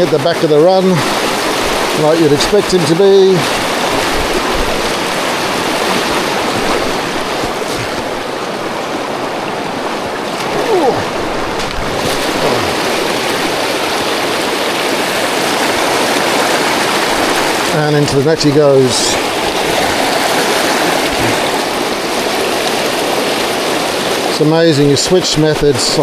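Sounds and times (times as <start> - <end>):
river water rushing over rocks: 0.0 - 26.0.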